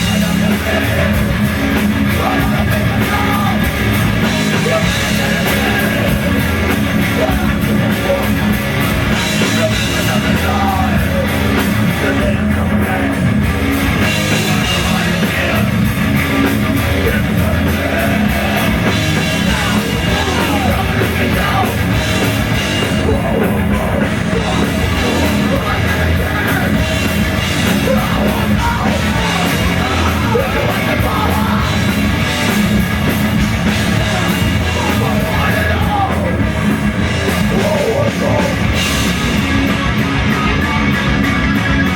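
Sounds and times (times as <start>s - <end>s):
bass guitar: 0.0s - 41.9s
distorted guitars: 0.0s - 41.9s
drum kit: 0.0s - 41.9s
shouted singing: 0.0s - 41.9s.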